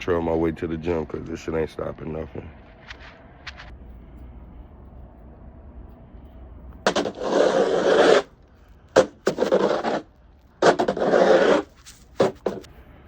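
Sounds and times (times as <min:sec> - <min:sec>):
snow shovel scraping snow: 0:06.9 - 0:08.3, 0:09.0 - 0:10.0, 0:10.6 - 0:12.7.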